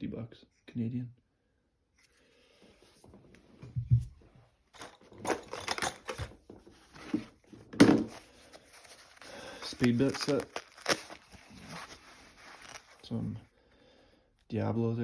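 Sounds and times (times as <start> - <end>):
tools rattling and clicking: 4.7 - 6.6.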